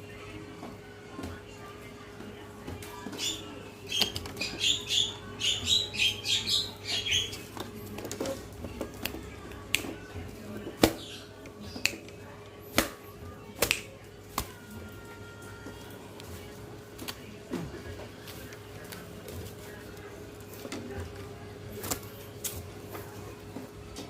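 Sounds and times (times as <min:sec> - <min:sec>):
bird chirping: 0:03.1 - 0:07.5.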